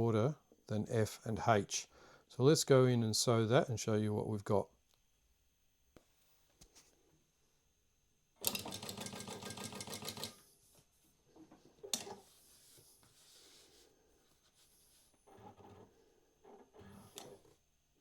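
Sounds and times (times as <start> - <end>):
sewing machine stitching: 8.4 - 10.3.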